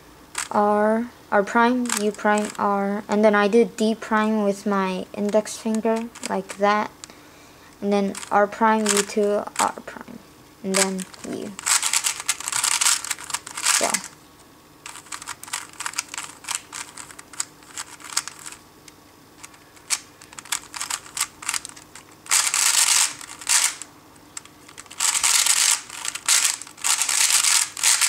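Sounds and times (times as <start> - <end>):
plastic puzzle cube clicking: 1.8 - 2.6, 5.4 - 6.6, 10.7 - 14.1, 14.9 - 18.6, 19.4 - 28.0.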